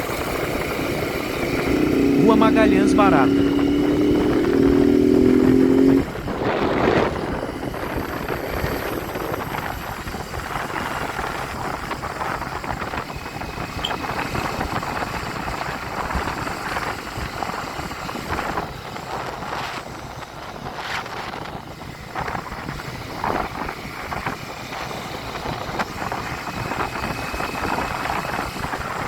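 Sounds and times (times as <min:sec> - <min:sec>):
motorcycle engine: 0:00.0 - 0:07.9
wind rushing over microphone: 0:03.2 - 0:29.0.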